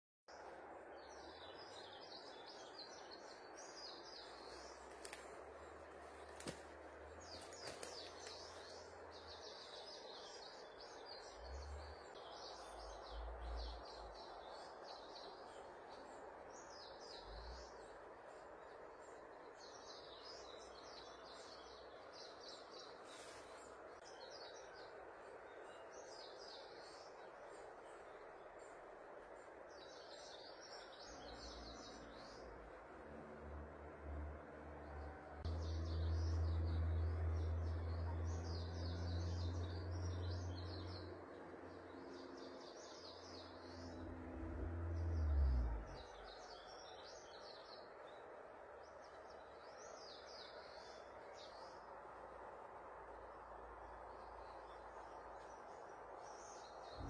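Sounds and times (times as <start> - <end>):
birds chirping: 0.3 - 57.0
faint background hiss: 0.3 - 57.0.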